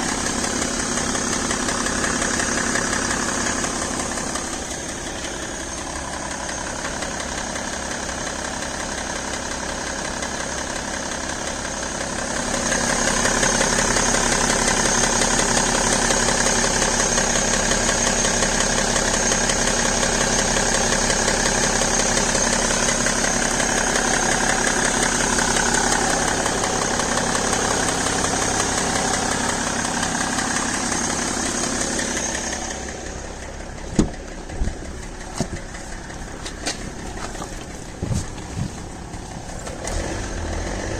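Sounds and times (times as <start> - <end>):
diesel engine idling with ticking: 0.0 - 40.9
sharp knocks: 33.9 - 34.8.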